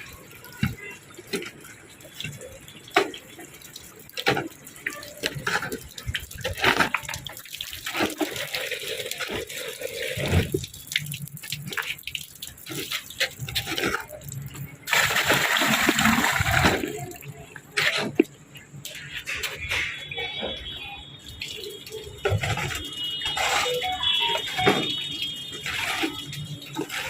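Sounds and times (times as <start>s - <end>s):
water gushing: 0.0s - 27.0s
water splashing and dripping: 0.0s - 27.0s.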